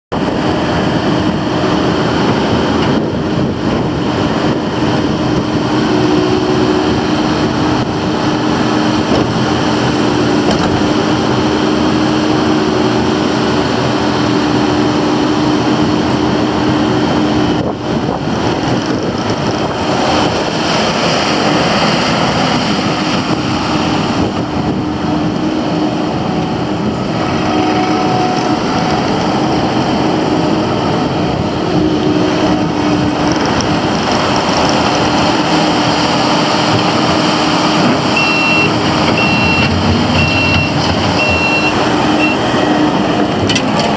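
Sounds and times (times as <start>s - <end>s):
diesel engine running: 0.0s - 43.9s
high-pitched machine rush: 27.2s - 43.4s.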